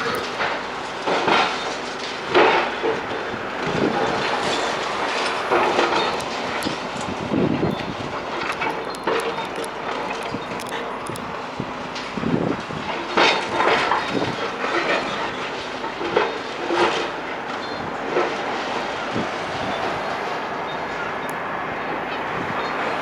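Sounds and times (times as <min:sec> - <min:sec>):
demolition machine hum: 0:00.0 - 0:23.0
concrete crunching and knocking: 0:03.8 - 0:11.3.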